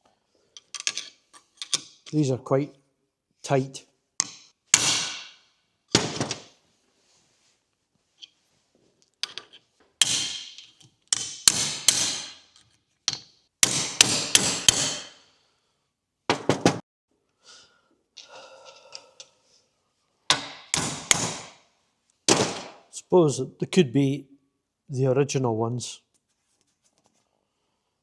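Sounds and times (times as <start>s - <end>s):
hammer striking metal: 4.2s - 5.4s, 10.0s - 10.6s, 11.2s - 12.5s, 13.6s - 15.2s, 20.3s - 21.6s.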